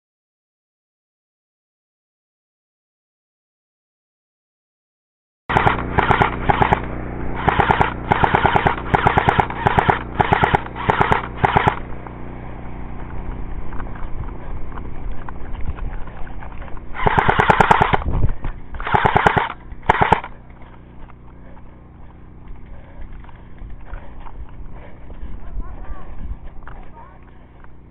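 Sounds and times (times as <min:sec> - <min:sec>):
airsoft gun firing bursts: 0:05.5 - 0:12.4, 0:16.9 - 0:22.1.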